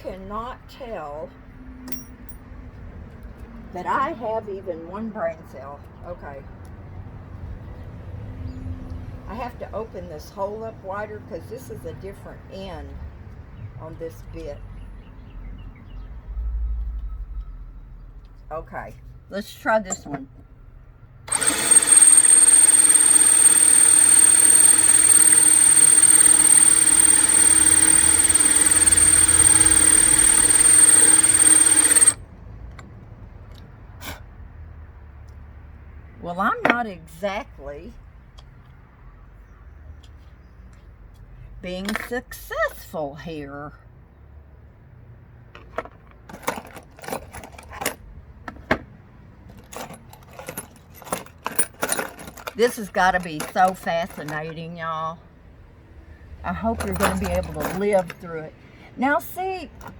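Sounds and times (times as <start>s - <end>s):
power drill whining: 21.3s - 32.2s.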